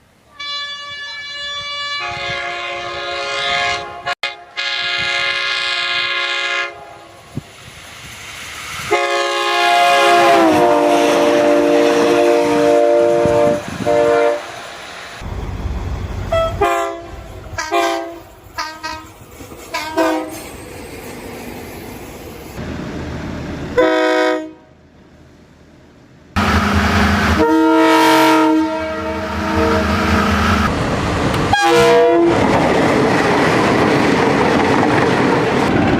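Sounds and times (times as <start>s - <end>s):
passing train rumble: 0.0s - 35.9s
locomotive air horn chords: 0.3s - 7.2s, 8.9s - 14.5s, 16.3s - 19.1s, 19.7s - 20.4s, 23.8s - 24.7s, 26.4s - 30.6s, 31.5s - 32.4s
short horn toots: 16.3s - 19.1s.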